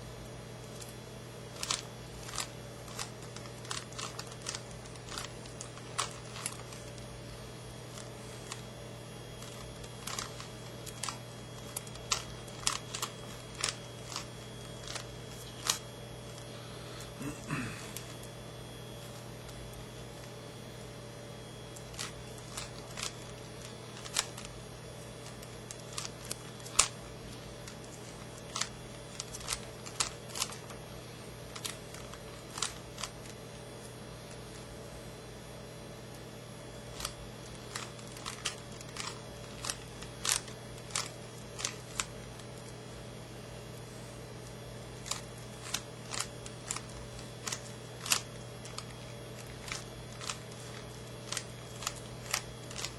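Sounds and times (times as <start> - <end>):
puzzle cube clicking: 45.1 - 48.8, 49.4 - 52.9.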